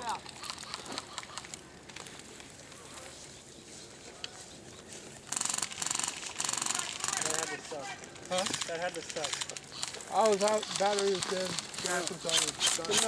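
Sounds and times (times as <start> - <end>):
quiet outdoor background: 0.0 - 13.0
airsoft rifle full-auto bursts: 5.3 - 13.0.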